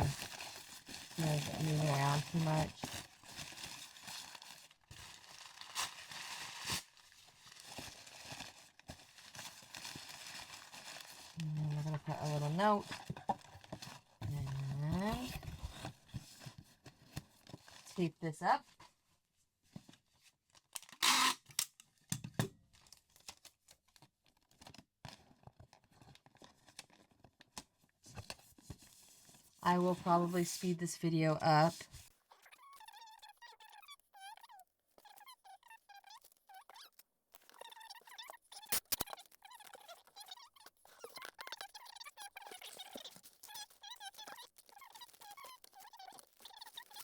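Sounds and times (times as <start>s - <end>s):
packing tape pulled off roll: 0.0s - 11.4s, 20.6s - 21.9s, 38.6s - 39.8s
paper crinkling and rustling: 0.0s - 18.0s, 19.7s - 21.0s, 22.7s - 30.8s, 37.4s - 47.0s.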